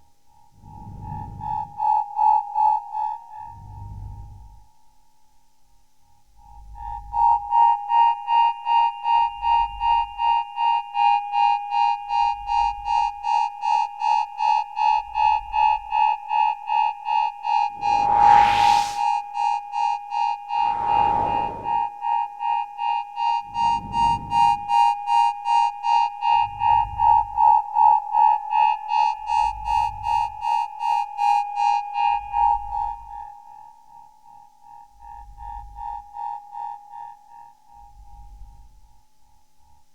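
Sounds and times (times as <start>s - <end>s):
rising noise sweeps: 17.7s - 19.1s, 20.6s - 21.8s.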